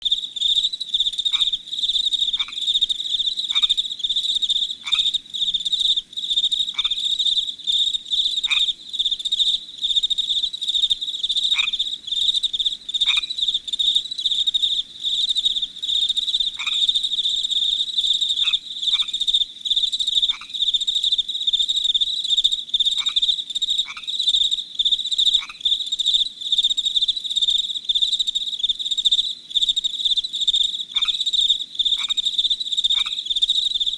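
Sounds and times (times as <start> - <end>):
crickets chirping: 0.0 - 33.9
frogs calling: 1.0 - 21.2, 21.8 - 24.2, 25.0 - 25.8, 30.5 - 33.9.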